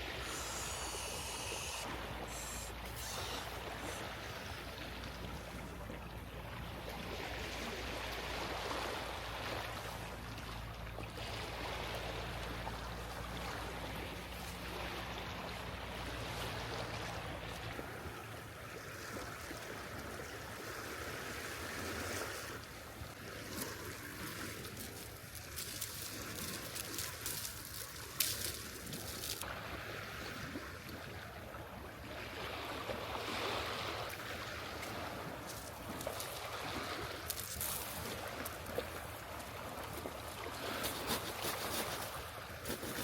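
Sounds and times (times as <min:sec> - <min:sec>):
rushing outdoor ambience: 0:00.0 - 0:05.8.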